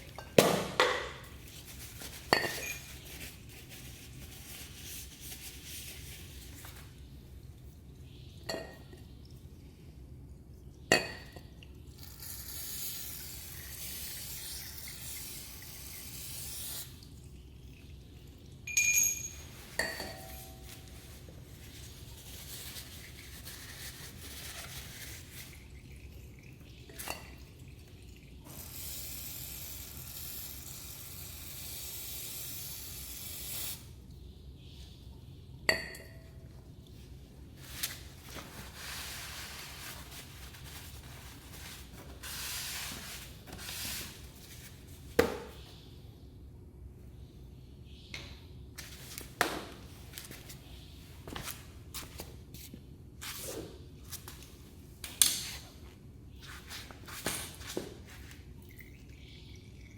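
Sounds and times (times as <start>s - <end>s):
steady hissing spray: 28.5s - 33.9s.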